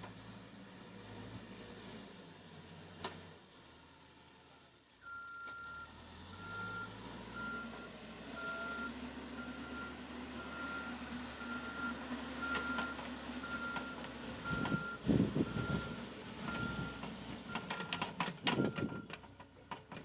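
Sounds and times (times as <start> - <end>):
diesel engine hum: 0.0 - 20.0
backup alarm beeping: 8.4 - 18.0.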